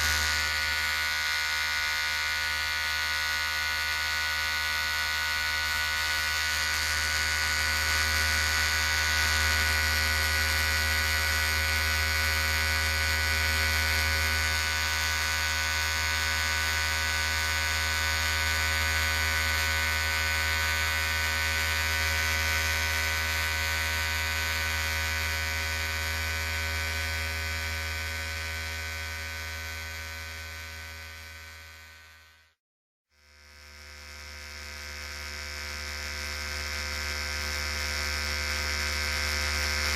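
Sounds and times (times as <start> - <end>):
electric hair clipper buzzing: 0.0 - 32.6, 33.2 - 39.9.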